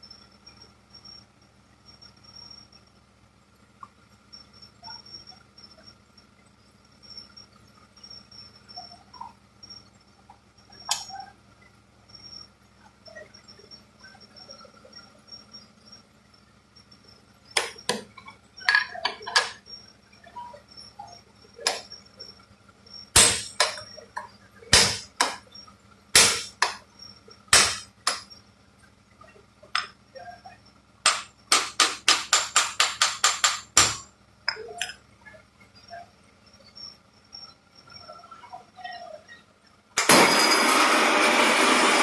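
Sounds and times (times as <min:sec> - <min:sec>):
faint steady hum: 0:00.0 - 0:42.0
hammer striking metal: 0:23.2 - 0:23.9, 0:24.7 - 0:25.4, 0:26.2 - 0:26.8, 0:27.5 - 0:28.3, 0:31.1 - 0:34.1.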